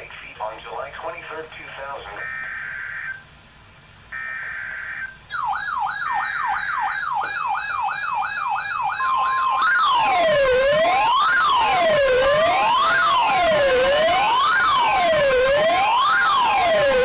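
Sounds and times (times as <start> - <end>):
fast electronic yelp siren: 2.2 - 3.2, 4.1 - 17.0
two-tone digital squawks: 2.2 - 3.2
wailing siren: 4.1 - 17.0
steady electronic tone: 8.9 - 17.0.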